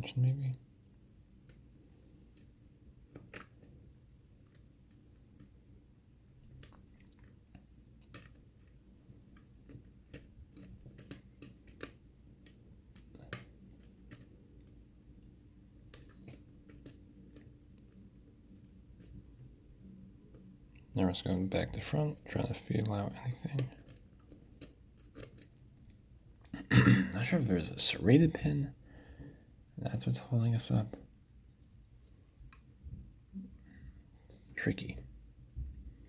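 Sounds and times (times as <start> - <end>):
lock pick metallic clicks: 8.0 - 8.7.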